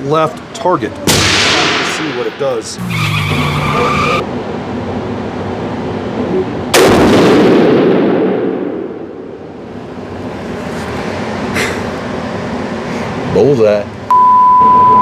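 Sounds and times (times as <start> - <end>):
rifle shot with reverberation: 1.1 - 2.2, 6.8 - 9.0.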